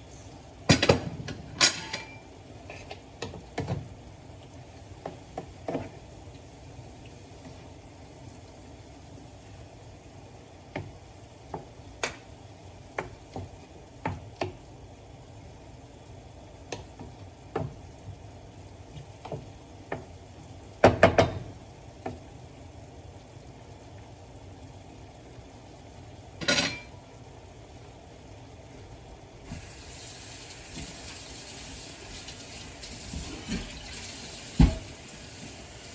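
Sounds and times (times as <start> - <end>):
broth simmering: 2.3 - 20.8, 27.0 - 35.9.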